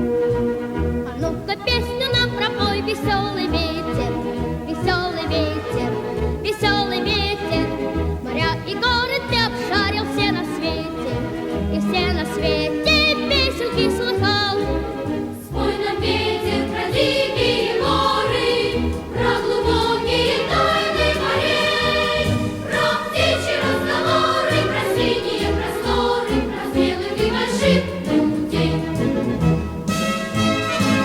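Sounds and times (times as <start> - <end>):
music with steady beat: 15.0 - 31.0
choir singing: 15.5 - 29.3.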